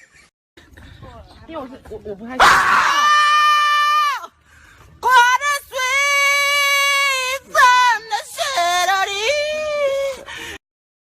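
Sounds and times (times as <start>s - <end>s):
high-pitched screams: 2.4s - 4.3s.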